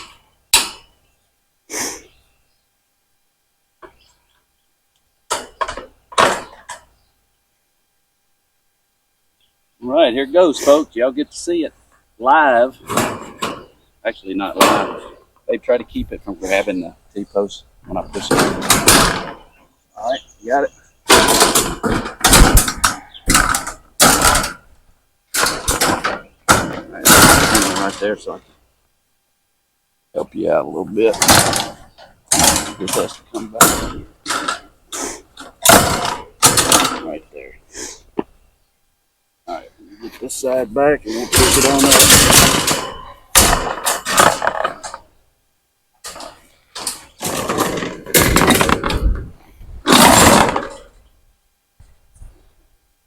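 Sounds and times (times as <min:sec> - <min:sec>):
wire panel scraping against metal posts: 0:12.5 - 0:15.3, 0:16.0 - 0:28.4, 0:31.0 - 0:37.4, 0:40.1 - 0:45.1, 0:46.0 - 0:51.0.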